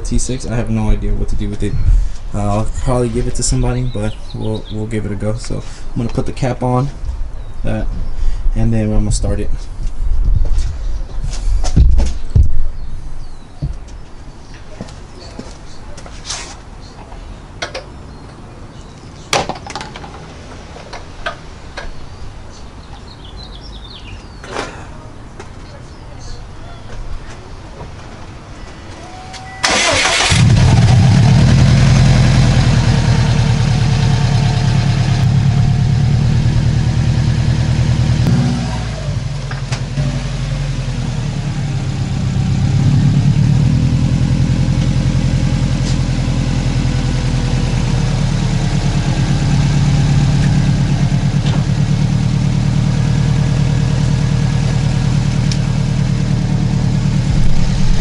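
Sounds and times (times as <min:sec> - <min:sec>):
car engine starting and idling: 0:29.6 - 0:58.0.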